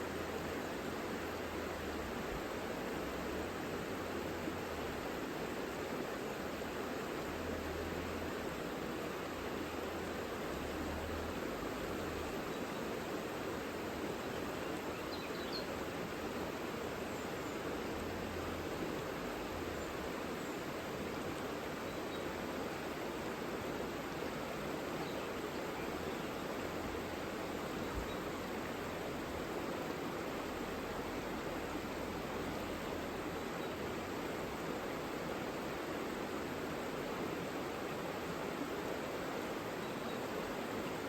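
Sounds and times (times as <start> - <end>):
mountain river rushing: 0.0 - 41.0
faint bird chirps: 14.2 - 15.8, 27.6 - 28.6, 39.8 - 40.3.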